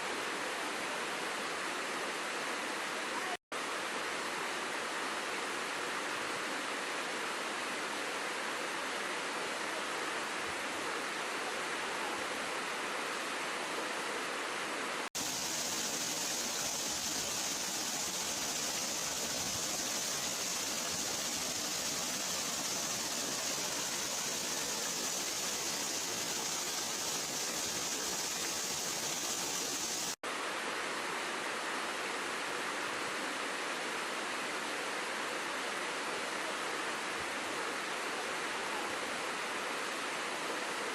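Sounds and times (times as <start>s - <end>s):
waterfall rushing: 15.2s - 30.2s.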